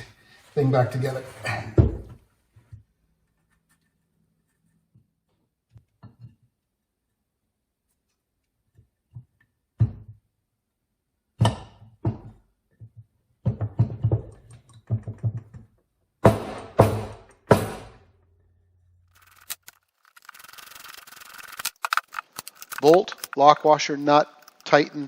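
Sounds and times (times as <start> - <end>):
quick run of clicks: 19.1 - 25.0.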